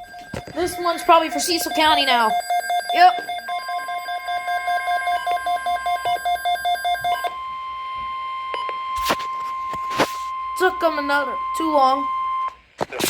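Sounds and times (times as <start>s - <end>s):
rapid alert beeping: 0.0s - 7.3s
steady warning alarm tone: 0.0s - 12.6s.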